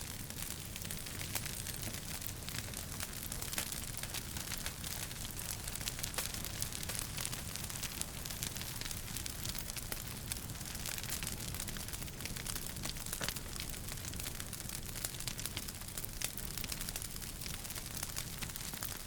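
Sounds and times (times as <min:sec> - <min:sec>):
fire pops and snaps: 0:00.0 - 0:19.0
flames rumbling and hissing: 0:00.0 - 0:19.0.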